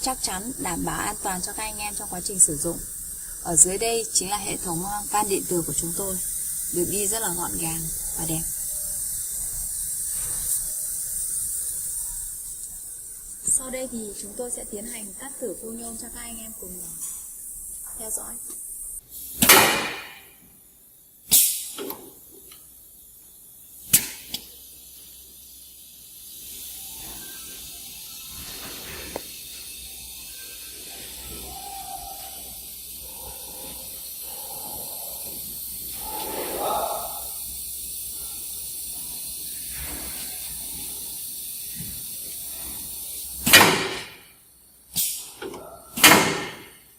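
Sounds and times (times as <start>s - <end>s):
compressed air hisses: 0.0s - 46.9s
valve click: 21.3s - 22.7s, 23.8s - 24.6s, 44.9s - 46.8s.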